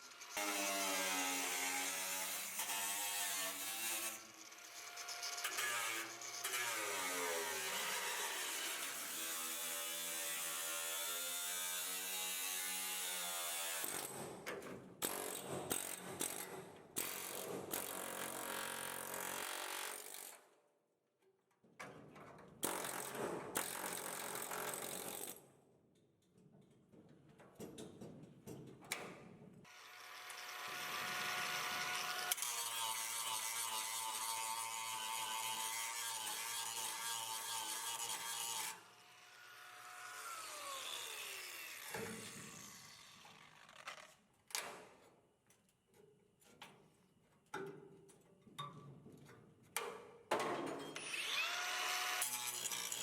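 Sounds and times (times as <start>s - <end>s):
grinding sheet metal: 0.2s - 9.6s
power tool motor whining: 51.0s - 52.6s.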